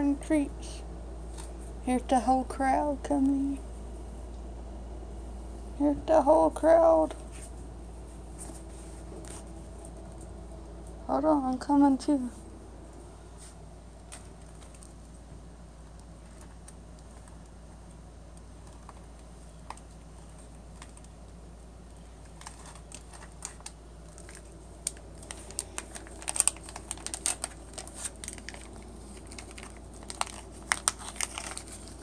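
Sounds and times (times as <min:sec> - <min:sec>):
low steady hum: 0:00.0 - 0:32.0
plastic package crinkling: 0:14.0 - 0:15.2, 0:21.9 - 0:32.0.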